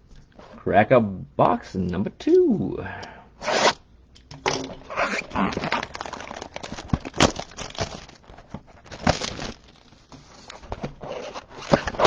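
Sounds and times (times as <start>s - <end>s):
plastic wrap crinkling and tearing: 4.8s - 12.0s.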